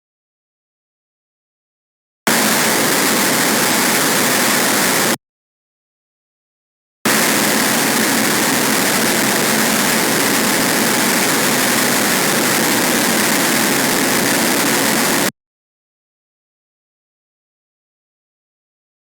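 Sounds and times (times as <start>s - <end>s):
distorted static noise wall: 2.3s - 5.2s, 7.1s - 15.3s.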